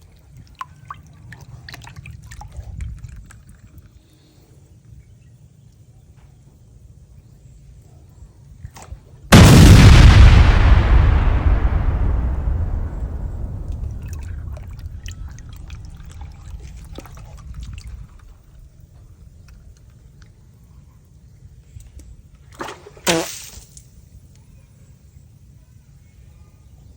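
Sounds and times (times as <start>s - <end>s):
water splashing and dripping: 12.9s - 18.8s.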